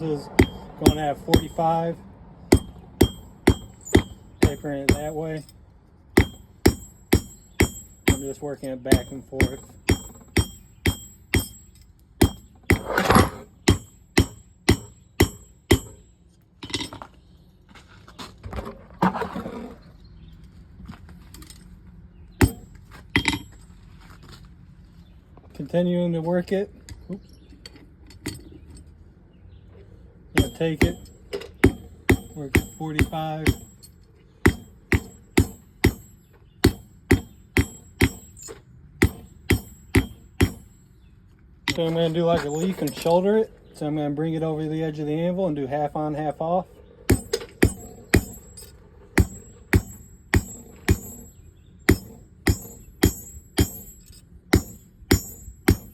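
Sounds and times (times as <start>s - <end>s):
hammer striking metal on anvil: 0.0s - 1.9s, 2.5s - 5.5s, 6.2s - 16.1s, 22.4s - 23.5s, 30.4s - 40.8s, 47.1s - 55.9s
metal clinks and knocks: 0.0s - 17.2s, 21.2s - 21.8s, 22.4s - 24.1s, 26.8s - 29.0s, 30.4s - 43.3s, 47.1s - 55.9s.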